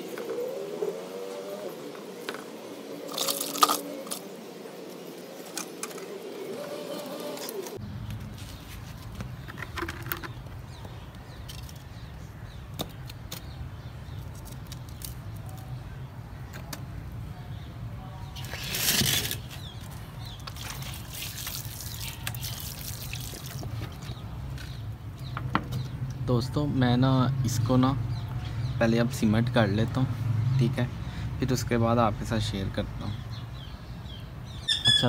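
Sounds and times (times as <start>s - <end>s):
cement being mixed by hand: 18.4s - 24.2s.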